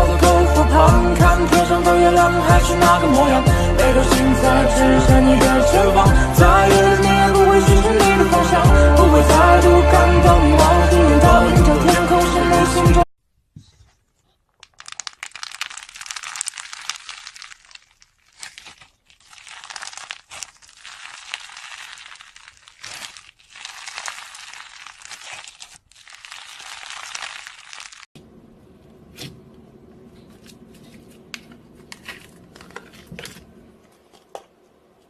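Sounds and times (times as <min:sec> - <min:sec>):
slime crackling and popping: 0:14.5 - 0:28.1.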